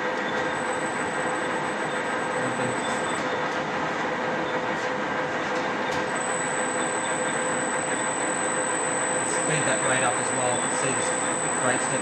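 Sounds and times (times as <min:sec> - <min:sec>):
lathe mechanical whir: 0:00.0 - 0:12.0
thin high whine: 0:06.0 - 0:12.0.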